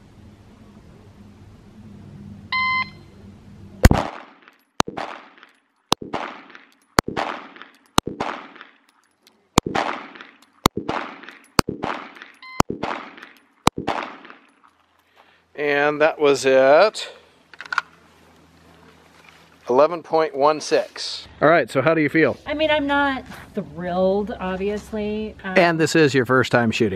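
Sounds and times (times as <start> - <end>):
shot timer beep: 2.5 - 3.0, 12.4 - 12.8
pistol shots with echo: 3.8 - 5.4, 6.0 - 8.8, 9.6 - 14.5.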